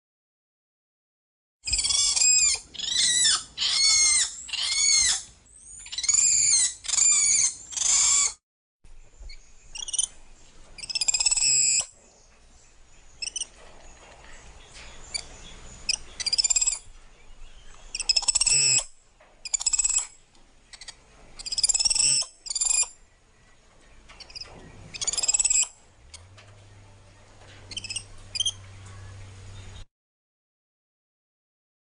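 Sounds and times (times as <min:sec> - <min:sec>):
monkey calling: 0:01.7 - 0:08.4, 0:09.7 - 0:10.1, 0:10.8 - 0:11.9, 0:13.2 - 0:13.5, 0:15.9 - 0:16.8, 0:17.9 - 0:23.0, 0:24.2 - 0:25.7, 0:27.7 - 0:28.6.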